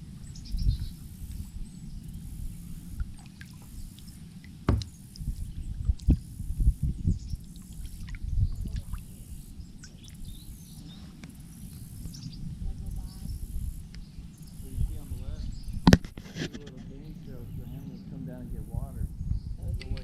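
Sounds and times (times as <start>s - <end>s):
wind rumble on microphone: 0.0s - 20.0s
soft knocks: 4.7s - 5.0s
bird chirps: 8.4s - 15.8s.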